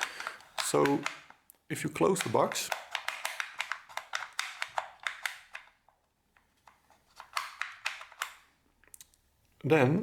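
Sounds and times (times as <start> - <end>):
wooden clicks and taps: 0.0 - 5.7.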